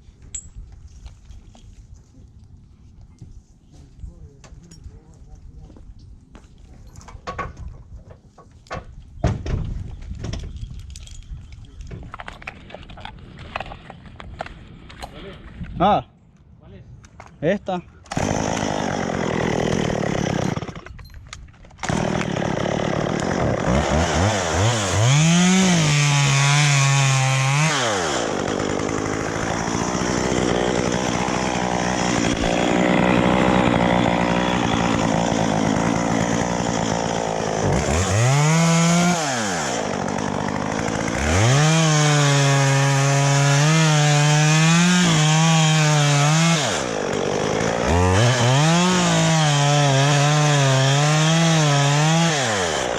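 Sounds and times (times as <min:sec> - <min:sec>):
chainsaw cutting wood: 0:18.1 - 0:21.0, 0:21.8 - 0:52.9.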